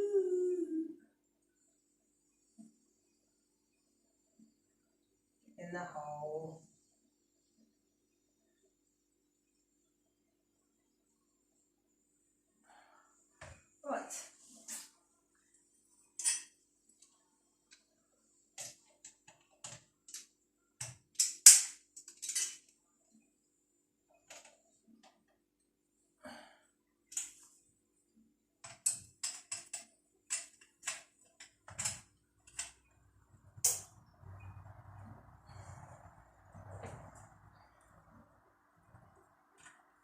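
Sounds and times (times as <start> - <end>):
hard objects clicking and knocking: 28.6 - 32.9.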